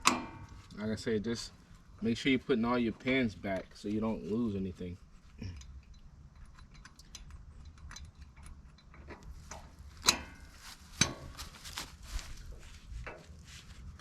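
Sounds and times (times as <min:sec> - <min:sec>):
sharp metallic clanks: 0:00.0 - 0:00.6, 0:05.9 - 0:11.3.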